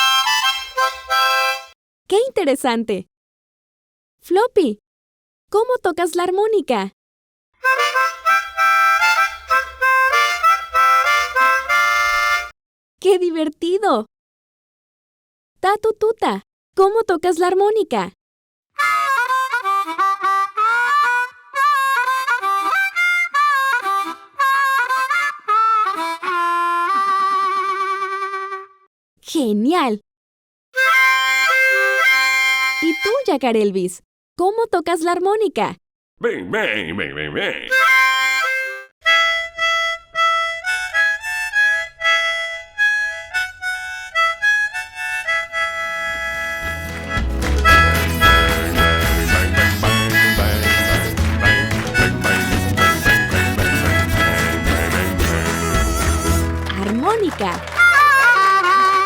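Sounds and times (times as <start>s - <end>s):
harmonica playing: 0.0s - 1.8s, 7.6s - 12.5s, 18.8s - 28.9s, 30.8s - 33.3s, 37.7s - 59.0s
bass accompaniment: 7.6s - 12.5s, 39.4s - 59.0s.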